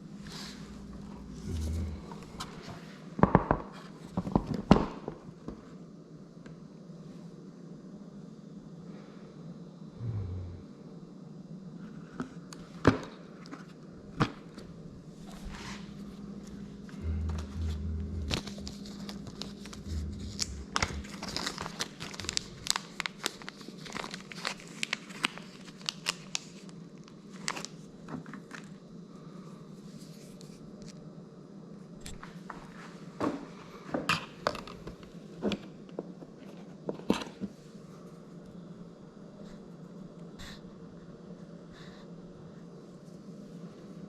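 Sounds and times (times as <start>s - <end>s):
steady low hum: 0.0s - 3.3s, 5.7s - 24.2s
material crinkling: 15.2s - 26.5s.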